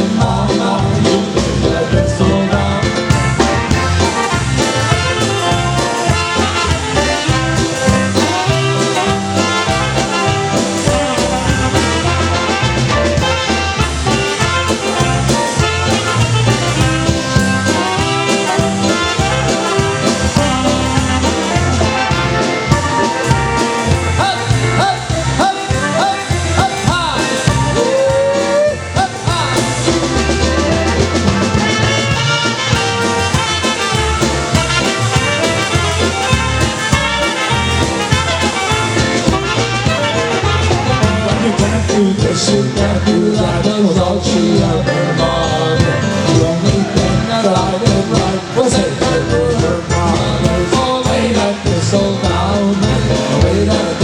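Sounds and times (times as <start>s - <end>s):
bass beat: 0.0s - 54.0s
brass lead: 0.0s - 54.0s
polka band playing: 0.0s - 54.0s.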